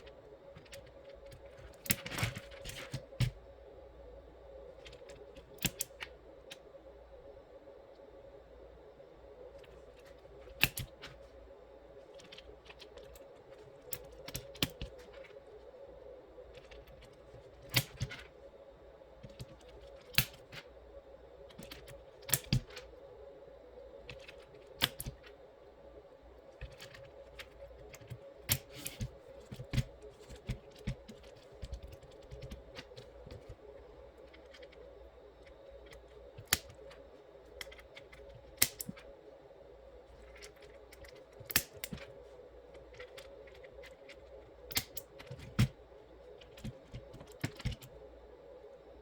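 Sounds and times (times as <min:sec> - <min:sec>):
steady low hum: 0:00.0 - 0:49.0
plastic keyboard clicks: 0:10.5 - 0:11.2, 0:24.1 - 0:25.3, 0:37.6 - 0:39.1, 0:40.3 - 0:42.1, 0:42.8 - 0:45.8.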